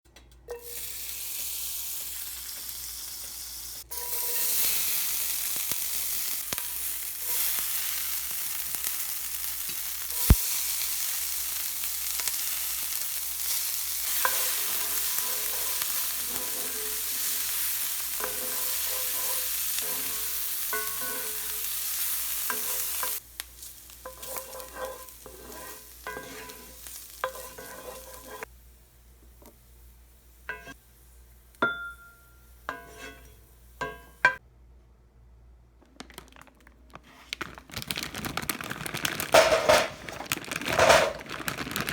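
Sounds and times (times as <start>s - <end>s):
meat sizzling in a frying pan: 0.6s - 30.4s
utensil scraping a pan: 14.0s - 23.2s, 24.0s - 28.5s, 32.7s - 33.4s.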